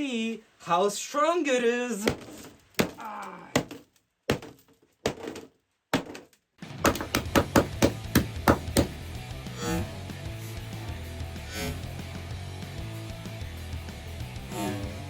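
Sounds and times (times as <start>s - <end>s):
sharp knocks on smartphone: 6.8s - 9.0s.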